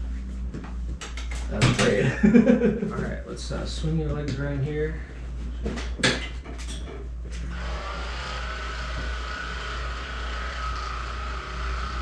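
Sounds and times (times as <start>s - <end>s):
small electric motor whining: 7.4s - 12.0s.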